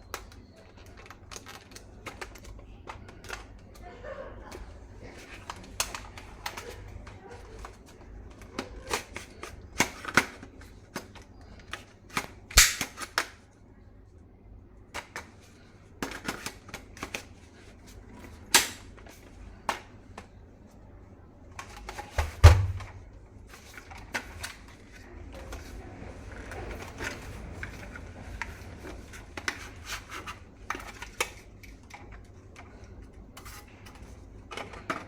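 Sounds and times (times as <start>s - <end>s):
loud plastic cracks: 12.1s - 13.4s, 18.4s - 18.9s
plastic toy rifle clicks and snaps: 12.2s - 13.4s, 18.5s - 18.9s.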